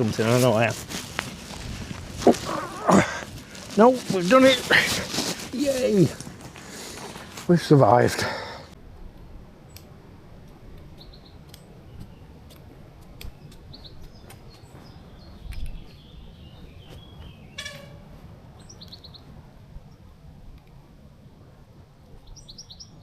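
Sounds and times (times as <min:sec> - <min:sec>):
small birds chirping: 0:10.8 - 0:18.0, 0:18.6 - 0:20.1, 0:22.2 - 0:23.0.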